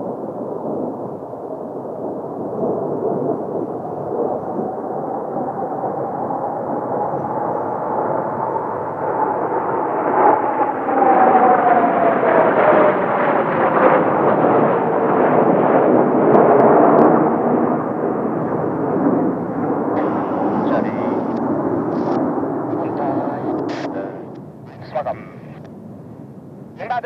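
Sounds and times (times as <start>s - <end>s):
jets flying past: 8.1s - 25.6s.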